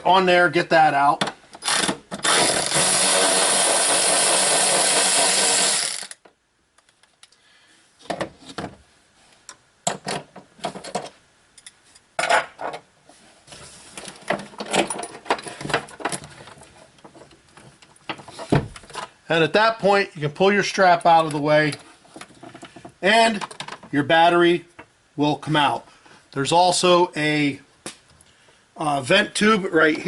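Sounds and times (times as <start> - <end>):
power tool running: 1.6 - 6.2
metal parts clicking and knocking: 14.2 - 19.1.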